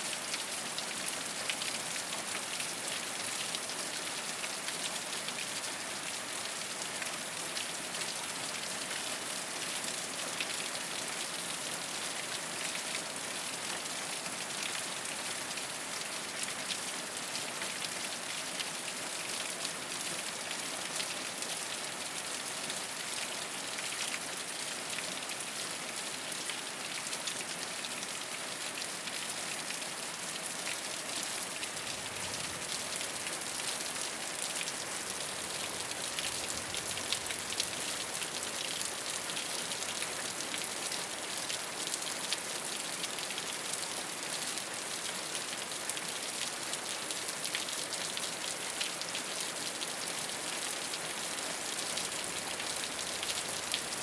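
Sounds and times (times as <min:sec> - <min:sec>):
rain on a rooftop: 0:00.0 - 0:54.0.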